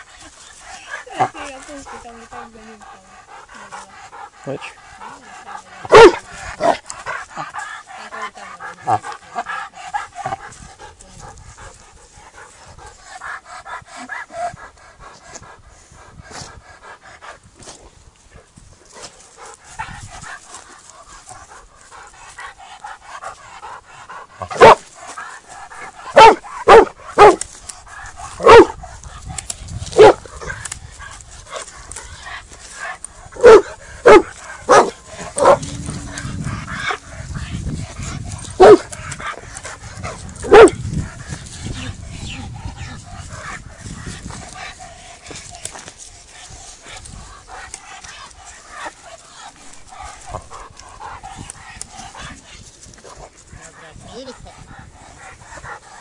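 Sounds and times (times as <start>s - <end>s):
dog barking: 5.9s - 6.8s, 24.5s - 24.8s, 26.1s - 27.4s, 28.4s - 28.8s, 30.0s - 30.2s, 33.4s - 35.7s, 38.6s - 38.9s, 40.4s - 40.8s
high wavering dog sounds: 19.6s - 55.8s.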